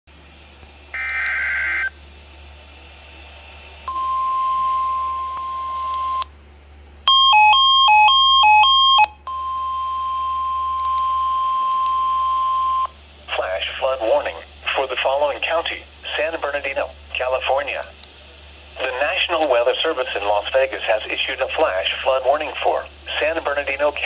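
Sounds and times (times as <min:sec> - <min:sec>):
steady alarm tone: 0:03.9 - 0:06.2, 0:07.1 - 0:12.9.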